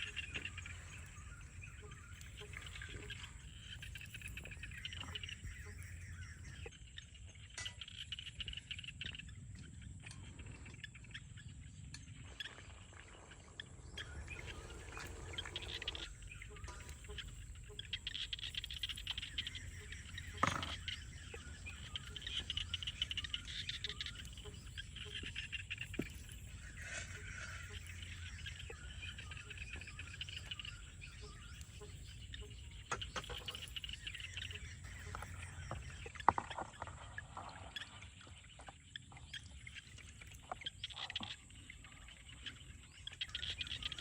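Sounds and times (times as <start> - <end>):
birds chirping: 0.0 - 44.0.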